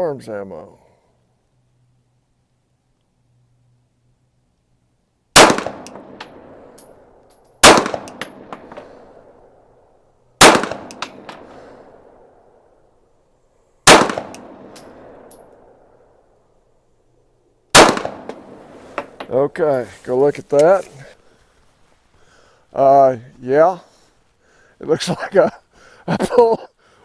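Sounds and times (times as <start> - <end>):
pistol shots with echo: 5.4 - 6.8, 7.6 - 9.4, 10.4 - 12.4, 13.9 - 15.9, 17.7 - 18.8.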